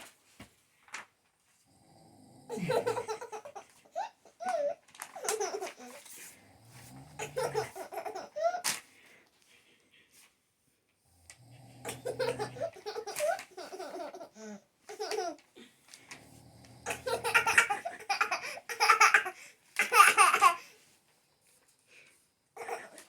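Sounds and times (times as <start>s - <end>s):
small child laughing: 2.5s - 6.0s, 7.2s - 8.8s, 12.0s - 15.4s, 16.9s - 20.6s.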